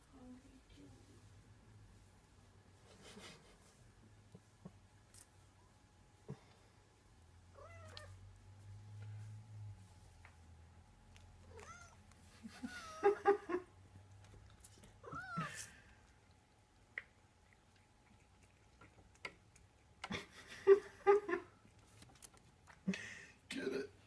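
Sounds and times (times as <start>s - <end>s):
cat meowing: 7.6s - 8.2s, 11.5s - 12.0s, 15.0s - 15.5s.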